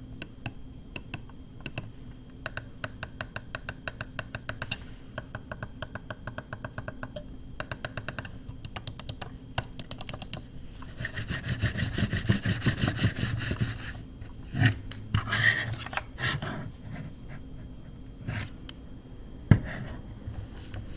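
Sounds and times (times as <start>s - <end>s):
mouse clicking rapidly: 5.4s - 10.5s.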